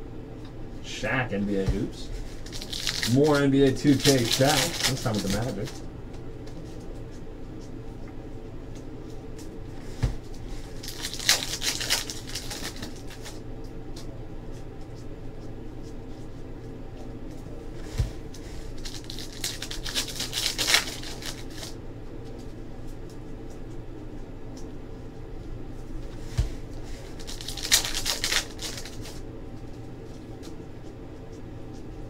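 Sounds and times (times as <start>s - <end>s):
steady low hum: 0.0s - 32.0s
card pack wrappers tearing and crinkling: 2.3s - 5.8s, 10.7s - 13.4s, 18.7s - 21.8s, 27.0s - 29.2s.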